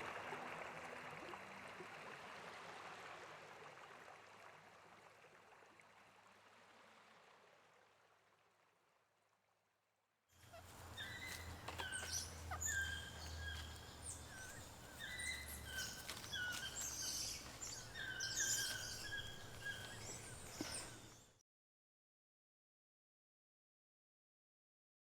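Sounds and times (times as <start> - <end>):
birds chirping and calling: 10.5 - 21.2.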